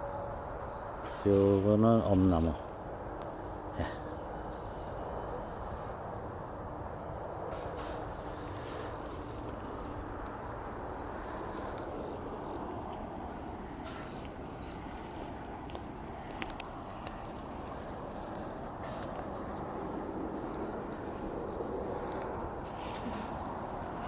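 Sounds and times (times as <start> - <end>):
high-pitched insect chorus: 0.0 - 24.0
faint clicks: 15.6 - 17.4.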